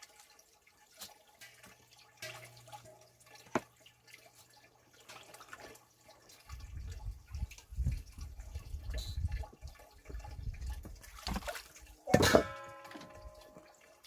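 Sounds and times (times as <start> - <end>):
water sloshing and dripping: 0.0 - 14.0
vessel clinking and ringing: 12.1 - 13.7.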